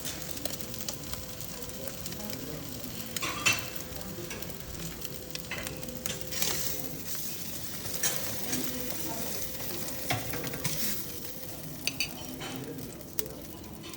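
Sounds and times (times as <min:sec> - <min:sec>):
eggs sizzling in a pan: 0:00.0 - 0:13.9.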